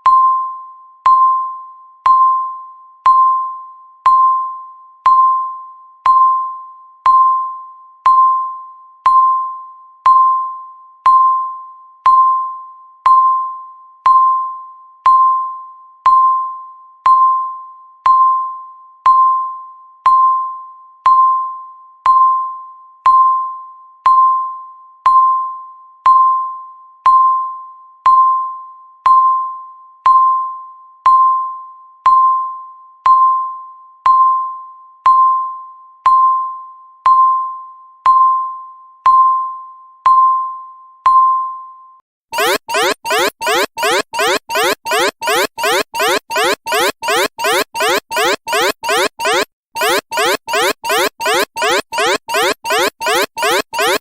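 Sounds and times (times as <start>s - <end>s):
countdown timer beeping: 42.4s - 54.0s.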